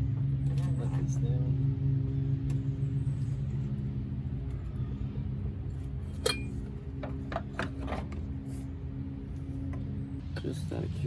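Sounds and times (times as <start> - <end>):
steady low hum: 0.0 - 11.0
metal tools clinking: 6.1 - 6.7.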